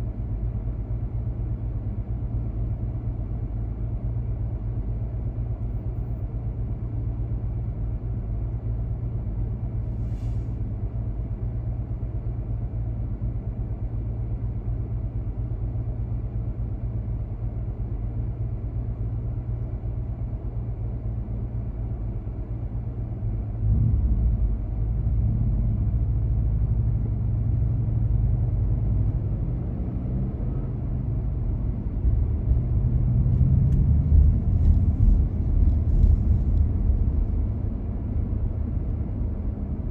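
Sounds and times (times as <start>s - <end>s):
road rumble: 0.0s - 39.9s
car engine: 20.8s - 39.9s.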